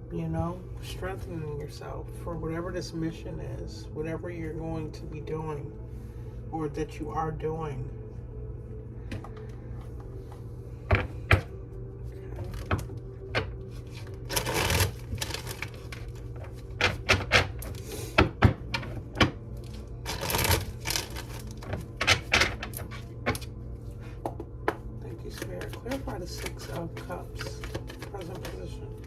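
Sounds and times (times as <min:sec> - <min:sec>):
cards being shuffled: 0:12.3 - 0:29.0
cards tapping and snapping: 0:24.2 - 0:28.7.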